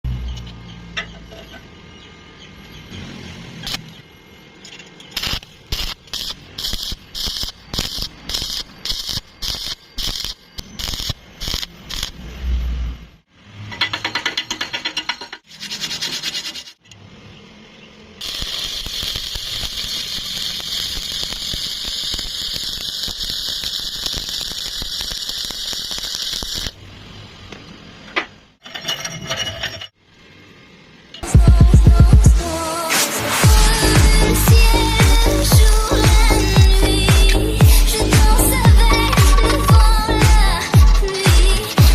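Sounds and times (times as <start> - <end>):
arc welding strikes: 4.6 - 12.4, 18.2 - 26.9, 32.9 - 41.9
hissing crackling welding arc: 5.0 - 12.4, 18.2 - 27.8, 32.8 - 41.9.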